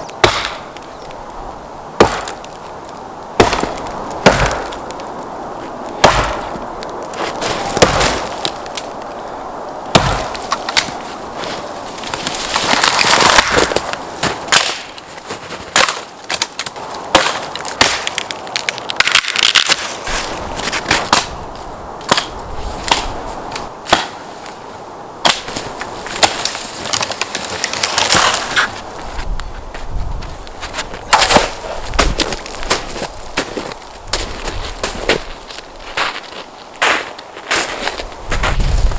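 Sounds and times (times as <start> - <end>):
dry wood cracking: 0.0 - 38.9.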